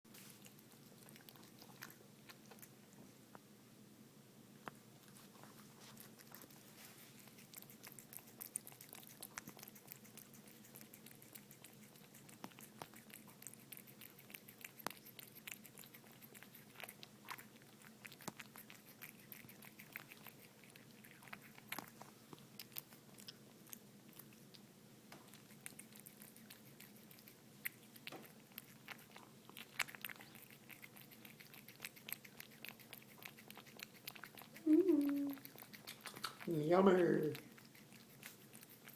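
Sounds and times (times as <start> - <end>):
crunchy chewing: 0.1 - 3.1, 4.6 - 36.5, 37.3 - 38.9
low steady hum: 0.1 - 38.9.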